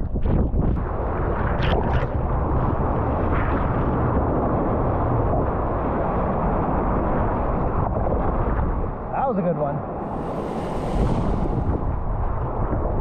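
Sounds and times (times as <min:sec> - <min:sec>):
wind buffeting microphone: 0:00.0 - 0:09.1, 0:09.8 - 0:13.0
breaking surf: 0:09.8 - 0:13.0
brief hisses: 0:10.0 - 0:12.2.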